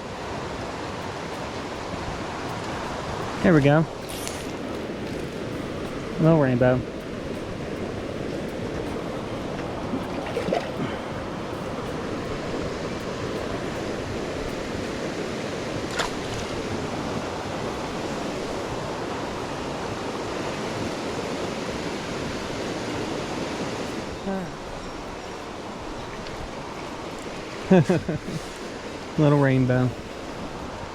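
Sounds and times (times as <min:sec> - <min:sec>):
stream rushing: 0:00.0 - 0:30.9.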